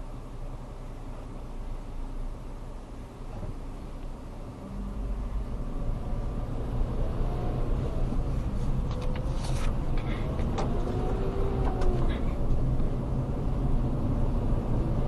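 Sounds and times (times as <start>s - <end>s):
road and engine rumble in car: 0.0s - 15.0s
squeaks and clicks in car: 8.8s - 12.6s.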